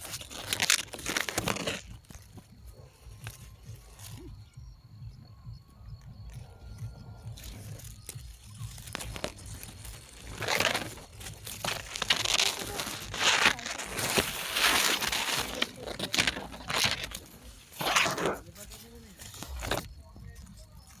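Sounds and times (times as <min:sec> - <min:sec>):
grass rustling in wind: 0:06.2 - 0:21.0.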